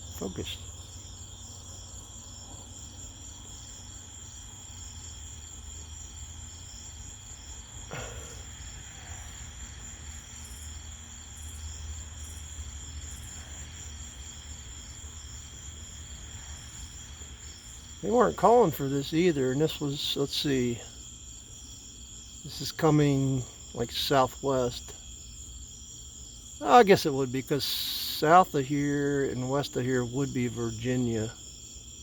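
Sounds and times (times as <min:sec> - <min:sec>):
crickets chirping: 0:00.0 - 0:32.0.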